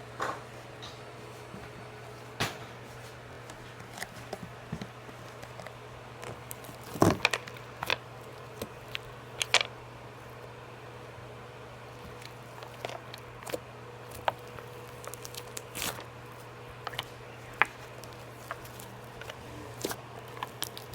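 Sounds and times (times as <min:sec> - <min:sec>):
steady low hum: 0:00.0 - 0:20.9
slime squished by hand: 0:12.0 - 0:20.9.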